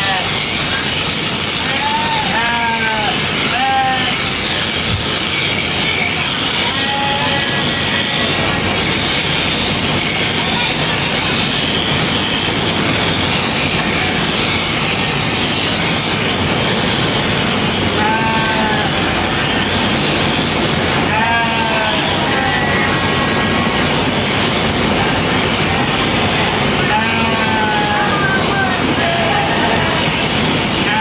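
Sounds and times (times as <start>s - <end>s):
sheep bleating: 0.0s - 0.8s, 1.5s - 4.7s, 6.2s - 8.1s, 17.8s - 19.7s, 21.0s - 23.5s, 26.7s - 31.0s
electric shears buzzing: 0.0s - 31.0s.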